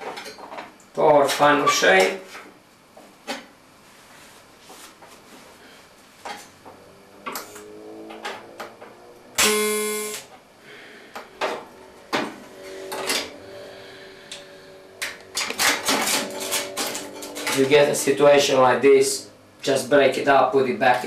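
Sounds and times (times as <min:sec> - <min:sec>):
metal sheets clinking: 0:15.2 - 0:17.9.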